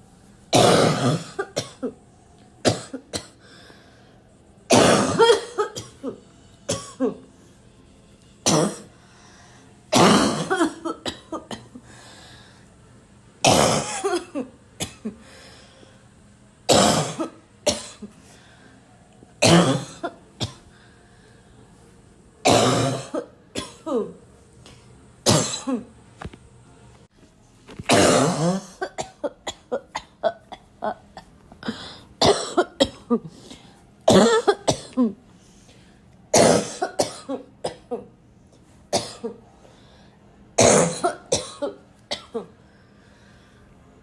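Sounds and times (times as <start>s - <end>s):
person coughing: 0.6s - 2.0s, 2.7s - 3.4s, 4.7s - 7.2s, 8.5s - 8.9s, 9.9s - 11.8s, 13.5s - 15.3s, 16.7s - 18.2s, 19.4s - 20.6s, 22.4s - 24.2s, 25.3s - 25.9s, 27.9s - 35.2s, 36.3s - 38.1s, 38.9s - 39.4s, 40.6s - 42.5s.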